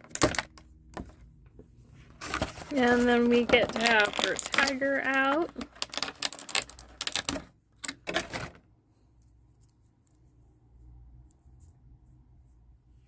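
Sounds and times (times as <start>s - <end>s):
plastic and cardboard packaging rustling: 1.9s - 8.6s.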